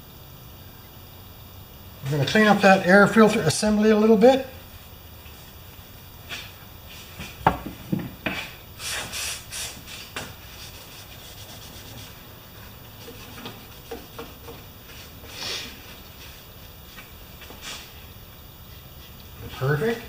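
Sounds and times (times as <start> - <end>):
scraping rubbing strokes: 8.8 - 18.0.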